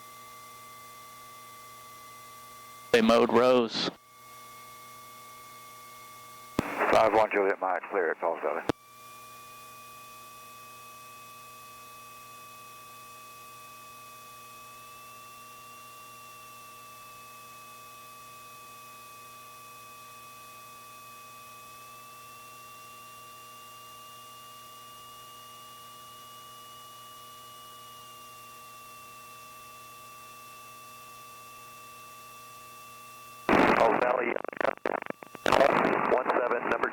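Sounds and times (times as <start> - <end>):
faint high whine: 0.1 - 11.9, 26.9 - 36.9
electrical hum and hiss: 1.0 - 4.0, 5.5 - 8.7, 33.4 - 36.9.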